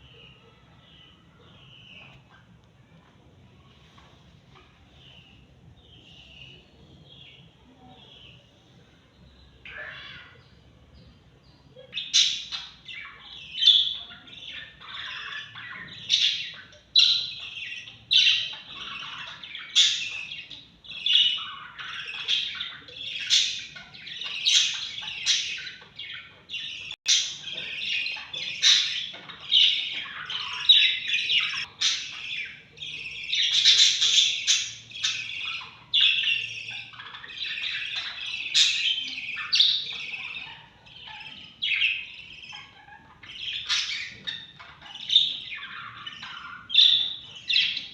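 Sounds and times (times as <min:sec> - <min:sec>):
baby lovebirds squawking chirps: 0:09.5 - 0:10.8, 0:11.7 - 0:47.9.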